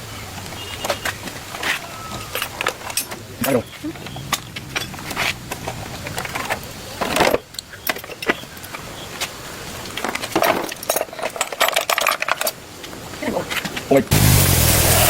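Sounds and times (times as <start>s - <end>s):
metal tools clinking: 0.8s - 8.8s, 10.0s - 12.6s.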